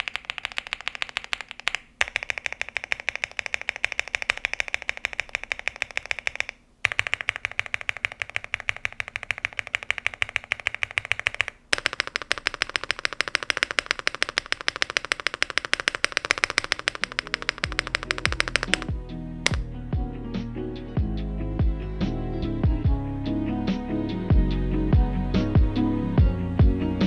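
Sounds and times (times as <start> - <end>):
fast mechanical keyboard typing: 0.0 - 19.6.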